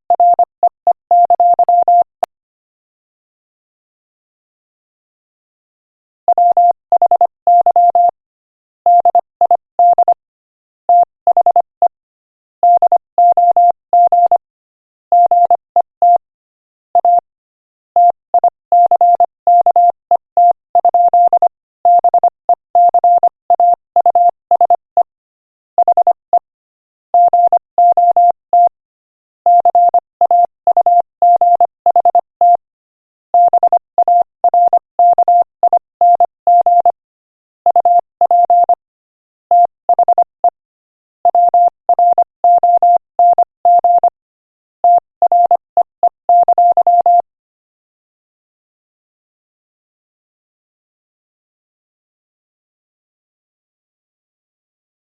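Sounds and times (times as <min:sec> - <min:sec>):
morse code beeps: 0:00.2 - 0:00.5, 0:01.1 - 0:02.1, 0:06.4 - 0:08.2, 0:08.9 - 0:10.2, 0:12.6 - 0:14.4, 0:15.2 - 0:16.2, 0:17.0 - 0:17.2, 0:18.0 - 0:25.1, 0:25.8 - 0:26.4, 0:27.2 - 0:28.7, 0:29.5 - 0:32.6, 0:33.4 - 0:37.0, 0:37.6 - 0:38.8, 0:39.5 - 0:40.6, 0:41.2 - 0:44.2, 0:44.8 - 0:47.3.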